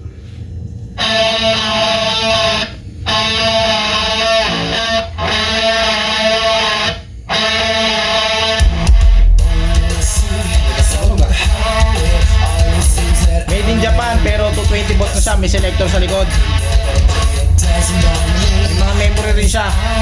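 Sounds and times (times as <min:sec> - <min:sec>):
electric guitar chords: 0:01.0 - 0:20.0
heavy bass: 0:08.6 - 0:20.0.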